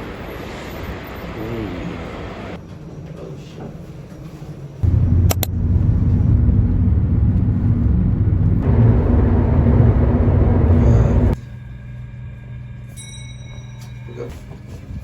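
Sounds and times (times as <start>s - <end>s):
engine rumbling: 4.8s - 12.9s
sharp clicks: 5.2s - 5.6s.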